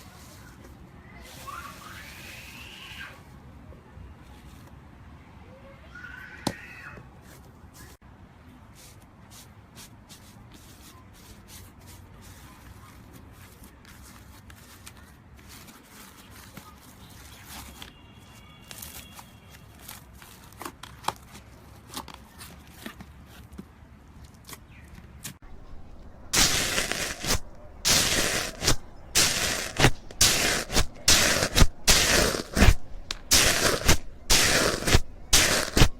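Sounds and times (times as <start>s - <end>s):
slime squished by hand: 25.5s - 35.9s.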